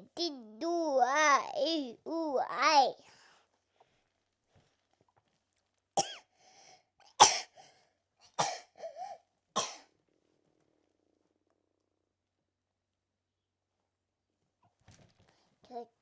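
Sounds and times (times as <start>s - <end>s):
baby coughing: 6.0s - 6.3s, 7.1s - 7.6s, 8.3s - 9.9s.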